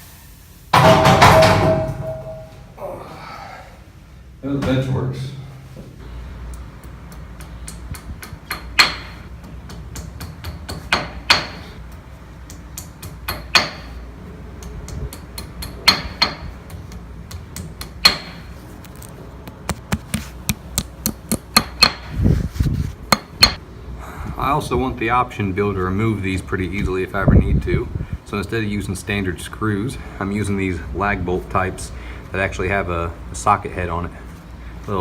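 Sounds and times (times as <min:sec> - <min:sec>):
hammer blows ringing: 0:00.8 - 0:02.8.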